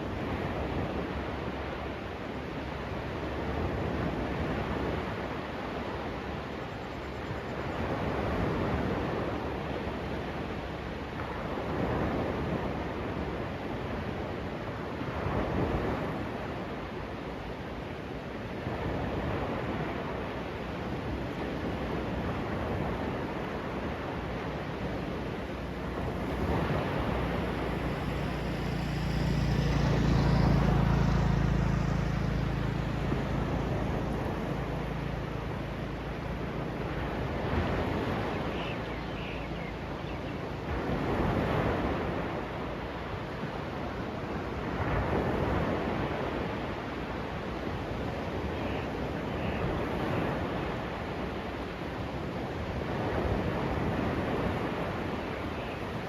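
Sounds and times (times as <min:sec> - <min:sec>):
sea waves on beach: 0:00.0 - 0:56.0
wind on microphone: 0:11.2 - 0:56.0
low droning hum: 0:24.6 - 0:37.9.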